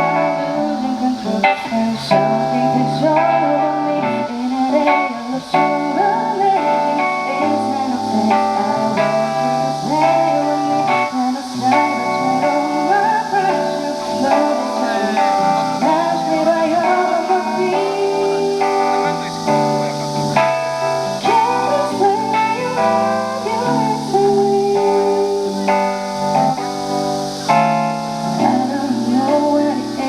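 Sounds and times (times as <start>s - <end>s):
live guitar music: 0.0s - 30.0s.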